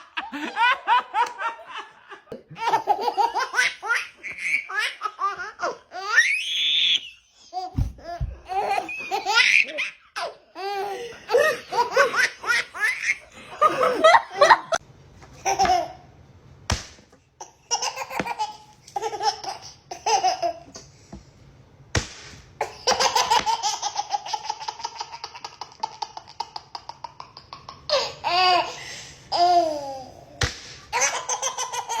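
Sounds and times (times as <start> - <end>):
babies laughing: 0.0 - 14.8, 22.6 - 30.0, 30.9 - 32.0.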